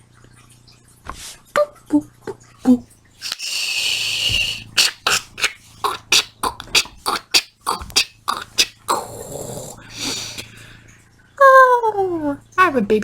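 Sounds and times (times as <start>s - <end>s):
beatboxing pops and clicks: 3.2s - 9.0s
breathy hisses: 3.2s - 10.8s.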